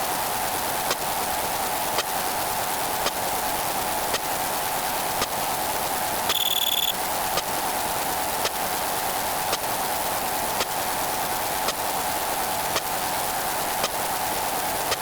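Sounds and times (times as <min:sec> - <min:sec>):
steady rain-like hiss: 0:00.0 - 0:15.0
short high beep: 0:06.3 - 0:07.0.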